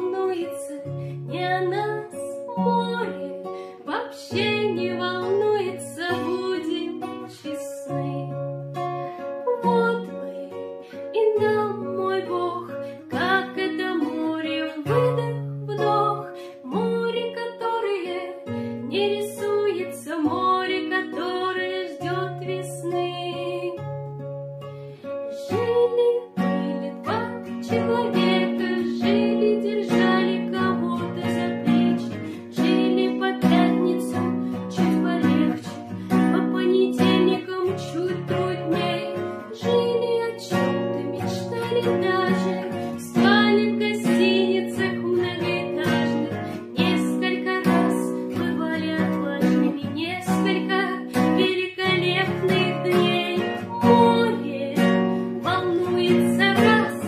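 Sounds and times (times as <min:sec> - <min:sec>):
acoustic guitar strumming: 0:18.3 - 0:57.0.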